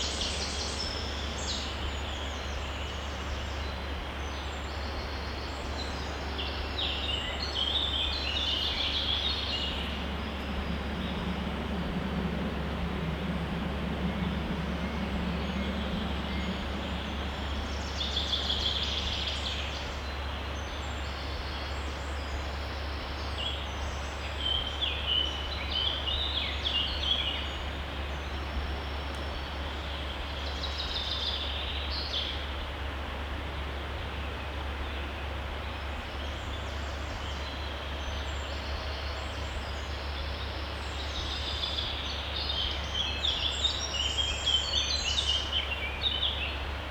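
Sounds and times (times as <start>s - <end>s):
songbirds chirping: 0.0s - 32.4s
low rumble: 7.4s - 20.3s.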